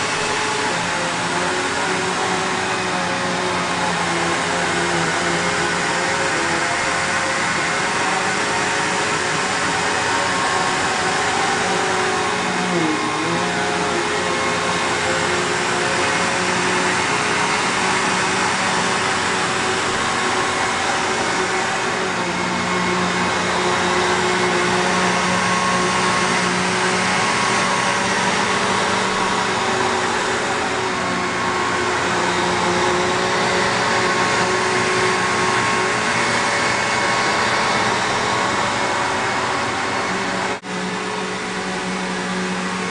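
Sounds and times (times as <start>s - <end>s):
vacuum cleaner running: 0.0s - 42.9s.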